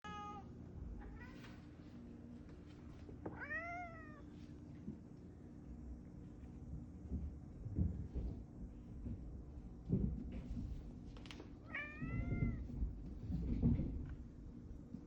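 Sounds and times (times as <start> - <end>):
cat meowing: 3.4 - 4.2.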